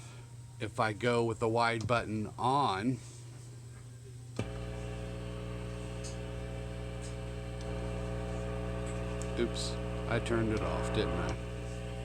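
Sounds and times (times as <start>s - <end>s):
guitar amplifier buzz: 4.4s - 12.0s.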